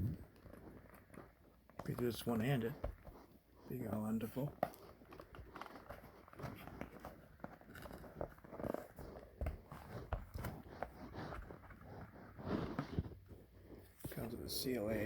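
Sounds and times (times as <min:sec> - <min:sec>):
packaging crinkling and crackling: 0:04.1 - 0:14.0.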